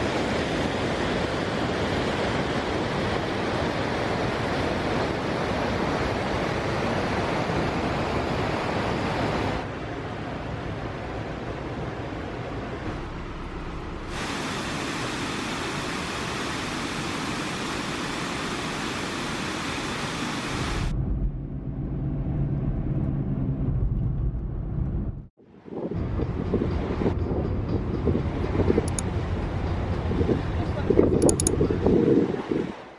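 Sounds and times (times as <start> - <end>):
waterfall roaring: 0.0 - 20.9
low rumbling noise: 9.6 - 32.4.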